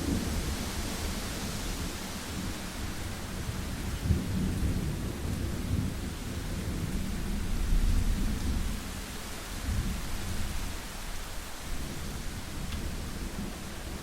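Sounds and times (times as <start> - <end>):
rolling thunder rumble: 0.0 - 10.9
steady rain hiss: 0.0 - 14.0.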